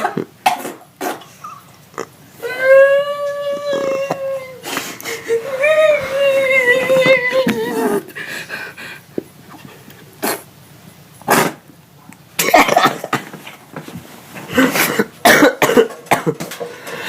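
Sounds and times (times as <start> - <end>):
long vocal notes: 2.0 - 8.8.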